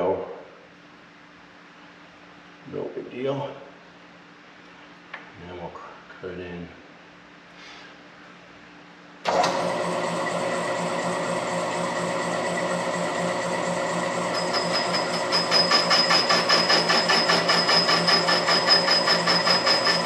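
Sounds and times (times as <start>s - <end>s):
lathe running: 9.3s - 20.0s
high pulsing tool squeal: 12.1s - 20.0s.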